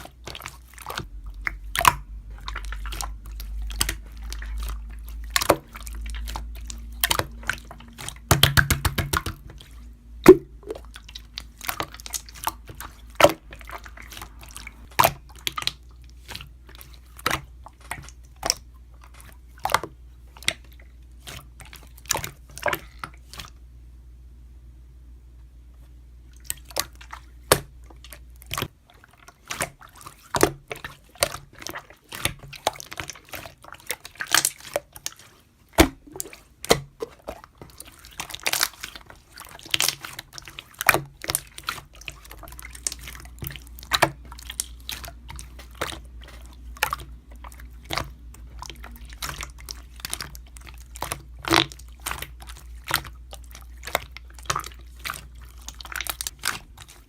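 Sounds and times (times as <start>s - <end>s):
slime wet clicks and pops: 10.2s - 10.9s.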